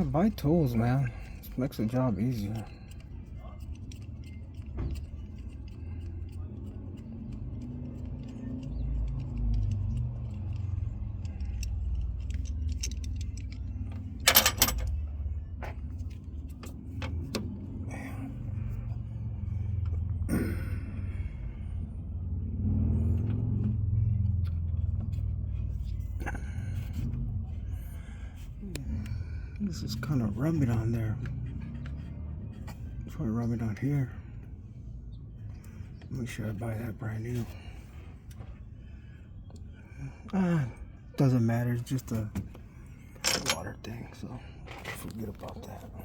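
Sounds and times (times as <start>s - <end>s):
hand tools clinking: 11.6s - 15.0s, 43.2s - 43.7s.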